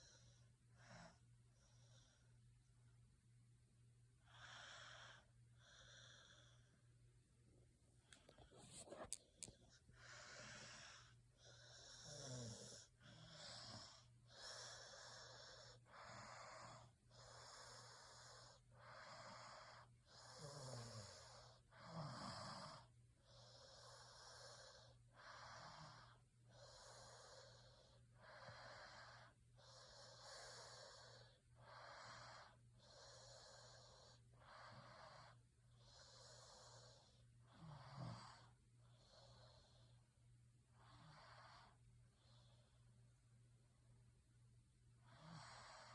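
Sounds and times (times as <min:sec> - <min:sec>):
person snoring: 0:10.0 - 0:22.9.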